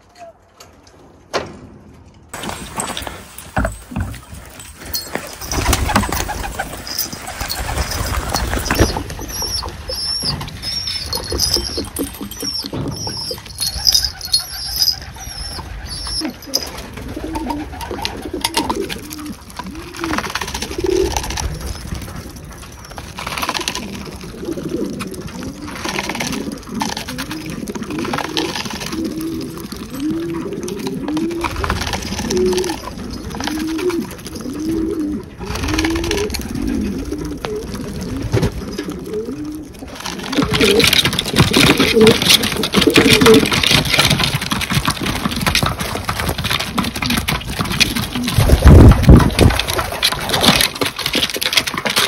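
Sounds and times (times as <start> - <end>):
pigeons cooing: 3.6 - 52.0
wing flutters: 4.2 - 34.7, 35.4 - 52.0
small birds chirping: 5.4 - 16.7.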